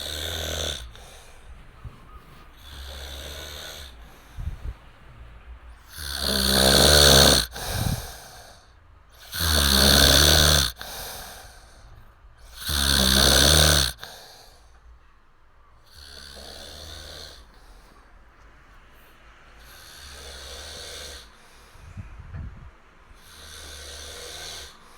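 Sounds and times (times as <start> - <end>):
man snoring loudly: 0.0 - 1.4, 2.6 - 4.4, 5.8 - 11.8, 12.4 - 14.6, 15.8 - 17.7, 19.6 - 21.4, 23.2 - 24.9
soft breathing: 0.0 - 6.5, 7.2 - 9.4, 10.7 - 12.7, 13.9 - 24.9.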